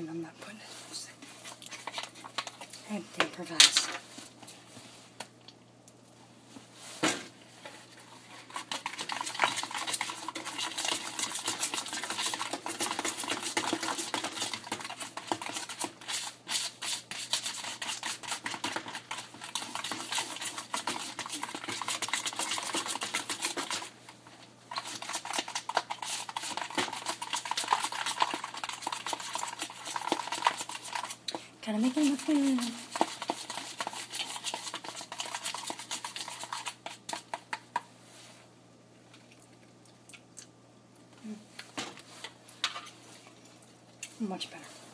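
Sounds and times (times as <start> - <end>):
spoon stirring sauce in bowl: 1.2 - 3.4, 7.9 - 37.9.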